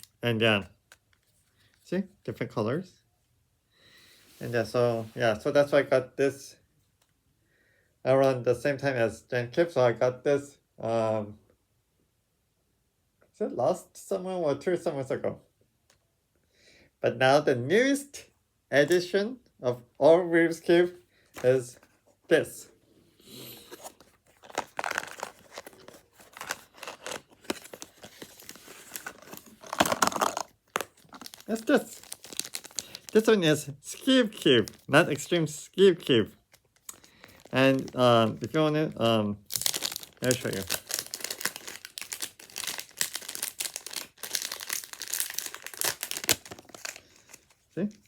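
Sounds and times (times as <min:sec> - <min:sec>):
crinkly wrapping rustling: 0:23.5 - 0:48.0
plastic puzzle clicks and scrapes: 0:23.7 - 0:31.6.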